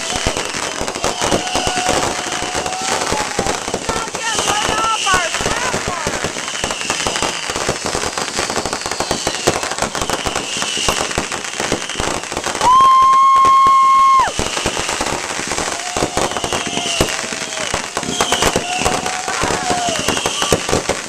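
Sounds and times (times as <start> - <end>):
loud steady whistle: 0.0 - 3.2, 8.5 - 11.0, 15.9 - 20.6
descending firework whistles: 0.0 - 21.0
fireworks crackling and popping: 0.0 - 21.0.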